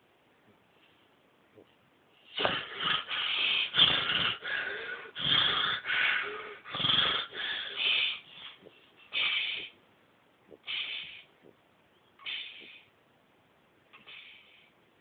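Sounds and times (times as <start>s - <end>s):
person snoring: 2.4s - 8.2s.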